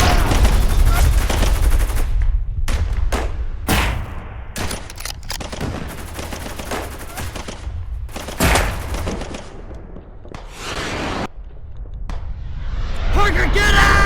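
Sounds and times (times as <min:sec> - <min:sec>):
rifle and machine-gun shots: 0:00.0 - 0:11.3
low rumble: 0:11.3 - 0:13.6.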